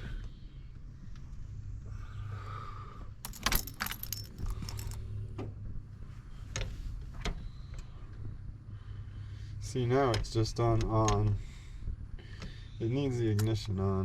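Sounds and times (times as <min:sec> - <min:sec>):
steady low hum: 0:00.0 - 0:14.0
keys jangling: 0:03.2 - 0:05.0.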